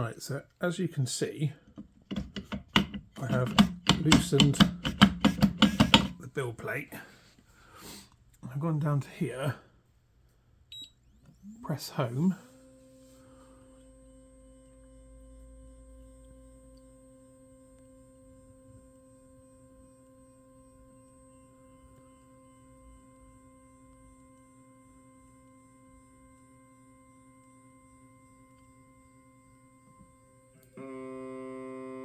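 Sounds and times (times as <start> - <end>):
stepper motors whining: 2.1 - 6.1, 10.9 - 32.0.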